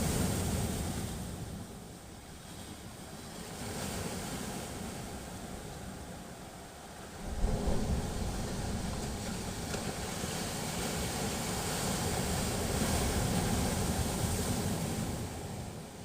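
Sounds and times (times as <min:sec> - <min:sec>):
sea waves surging onto shore: 0:06.5 - 0:16.0.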